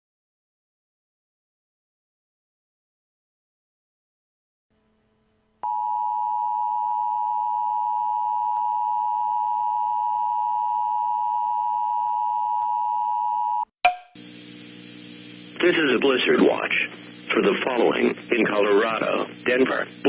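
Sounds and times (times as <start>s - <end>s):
loud steady high tone: 5.6s - 16.8s
low hum: 14.0s - 17.4s.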